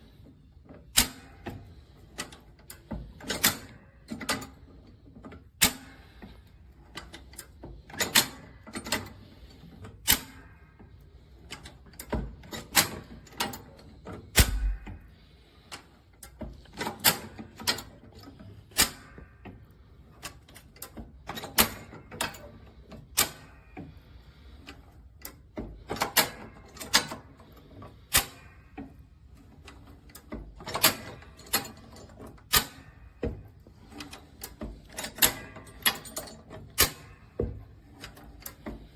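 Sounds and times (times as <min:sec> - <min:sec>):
metal jack clicks and clanks: 0:00.8 - 0:01.6, 0:02.2 - 0:04.6, 0:05.3 - 0:06.2, 0:06.9 - 0:09.2, 0:09.9 - 0:10.5, 0:11.5 - 0:15.0, 0:16.2 - 0:19.2, 0:20.2 - 0:23.6, 0:24.7 - 0:27.3, 0:28.0 - 0:29.0, 0:29.6 - 0:33.0, 0:33.8 - 0:37.2.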